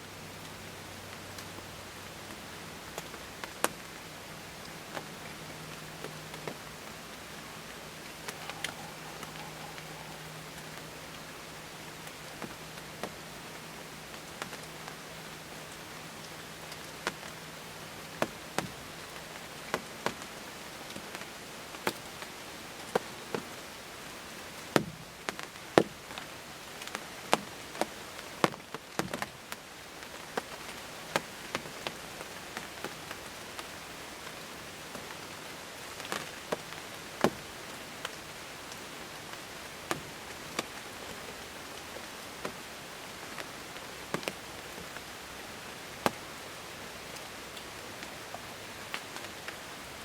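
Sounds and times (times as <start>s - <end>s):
hiss of rainfall: 0.0s - 50.0s
raindrops tapping on fabric: 2.2s - 4.0s, 18.1s - 23.5s, 24.6s - 33.7s, 35.8s - 45.1s, 46.0s - 46.2s.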